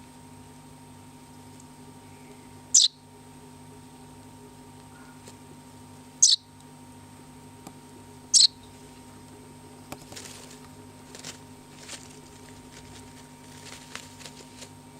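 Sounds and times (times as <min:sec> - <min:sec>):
soft rustles: 0:10.0 - 0:14.8.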